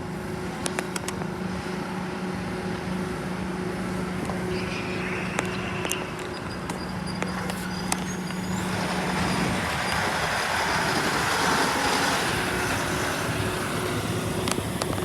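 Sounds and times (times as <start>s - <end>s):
heavy vehicle engine humming: 0.0s - 15.0s
brief high whine: 4.2s - 8.9s.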